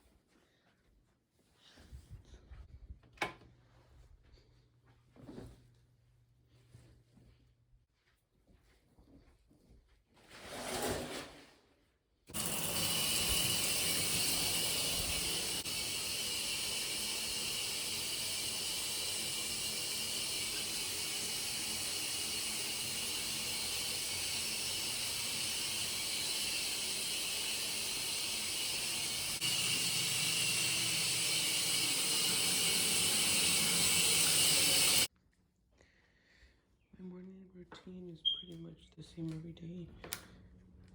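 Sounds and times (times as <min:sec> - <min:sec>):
water running: 0:12.3 - 0:35.1.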